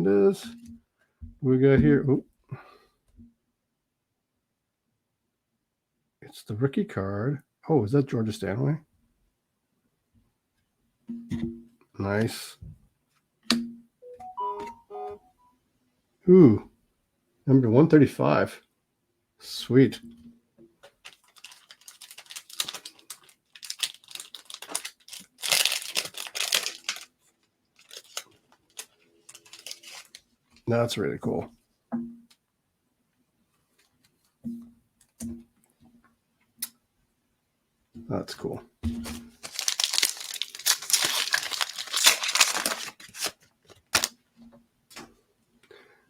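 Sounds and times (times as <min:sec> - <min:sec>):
cards clicking and rustling: 0:20.9 - 0:27.1, 0:27.8 - 0:30.2, 0:39.4 - 0:44.2
wrapper crinkling and tearing: 0:21.0 - 0:30.3, 0:39.1 - 0:44.2.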